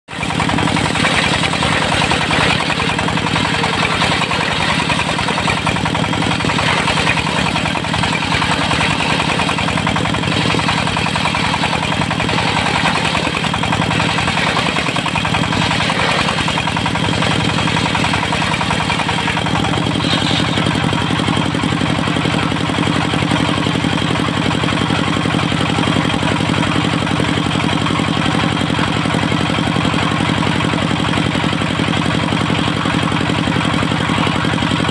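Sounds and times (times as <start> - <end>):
circular saw spinning: 0.1 - 22.8
diesel engine running: 0.1 - 34.9.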